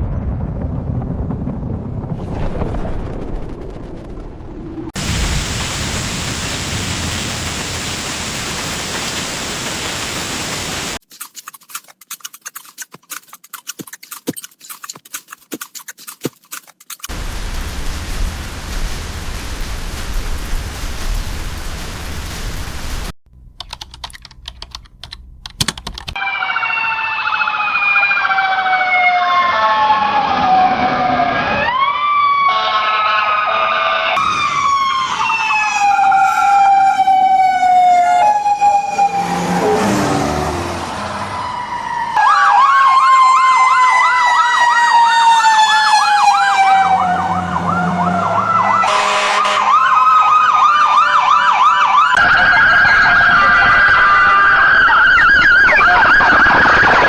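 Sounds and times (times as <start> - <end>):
clicks: 23.6 - 26.2
emergency vehicle siren: 26.2 - 57.0.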